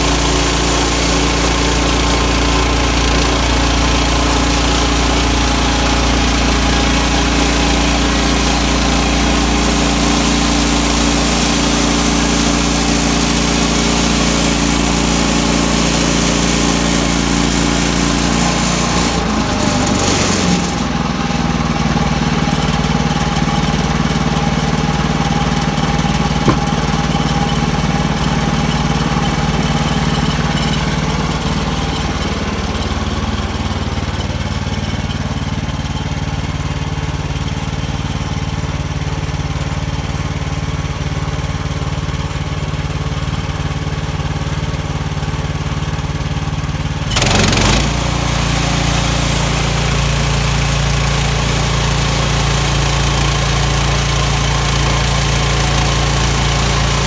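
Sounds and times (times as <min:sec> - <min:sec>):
gasoline engine running: 0:22.6 - 0:37.0.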